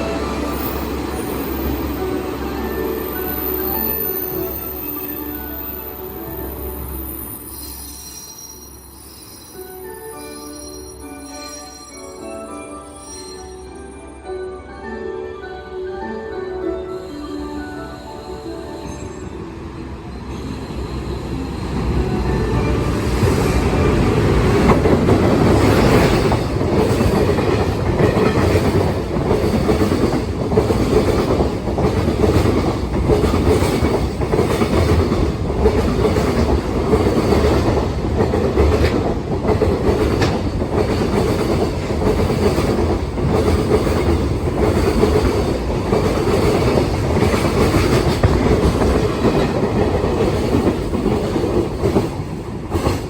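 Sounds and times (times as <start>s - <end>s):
freight train wheels rumbling: 16.6s - 53.0s
wheels clacking over rail joints: 23.9s - 53.0s.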